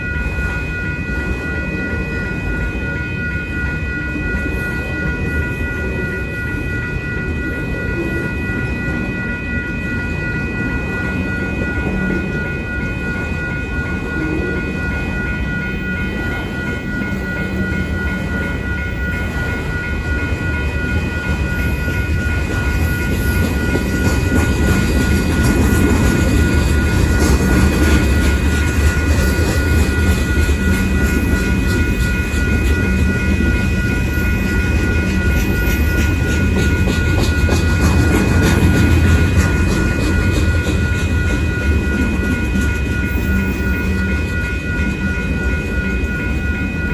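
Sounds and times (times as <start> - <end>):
crossing warning bell ringing: 0.0 - 46.9
low train rumble: 0.0 - 46.9
train wheels clacking on rail joints: 21.3 - 46.0.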